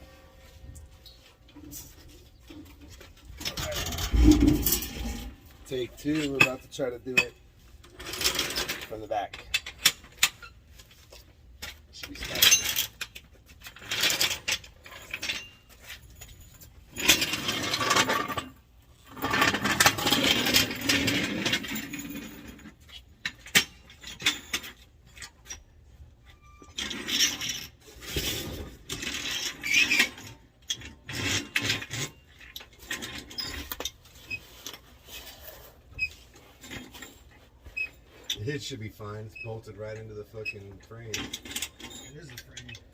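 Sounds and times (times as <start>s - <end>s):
metal scraping and rubbing: 0.0s - 6.9s.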